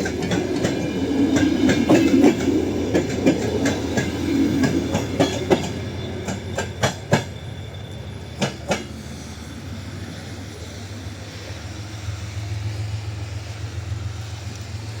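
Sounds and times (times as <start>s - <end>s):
train wheels clacking: 0.0s - 10.6s
train rumble: 0.0s - 15.0s.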